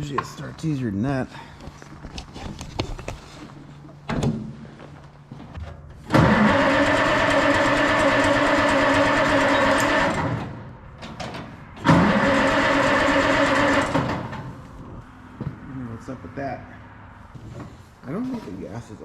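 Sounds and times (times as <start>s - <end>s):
tractor engine cranking: 5.9s - 15.0s.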